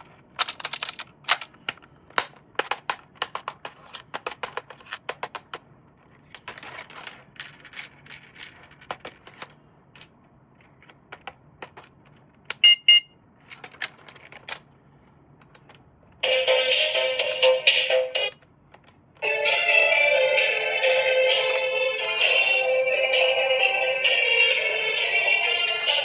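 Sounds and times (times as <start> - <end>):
toy helicopter parts handled: 0.0 - 5.4, 6.3 - 12.4.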